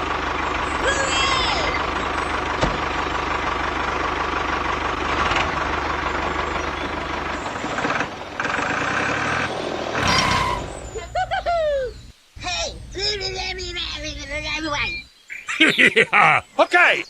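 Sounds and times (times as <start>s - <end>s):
vehicle engine running: 0.0s - 15.1s.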